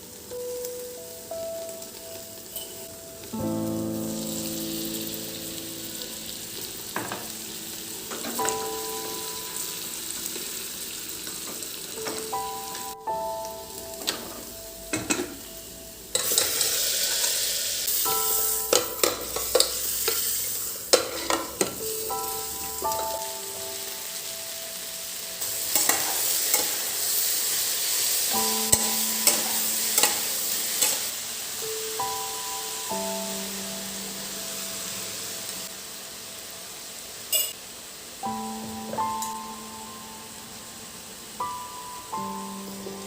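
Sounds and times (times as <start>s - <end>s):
food sizzling in a pan: 0.0s - 43.0s
utensil clicking against pan: 18.7s - 20.2s.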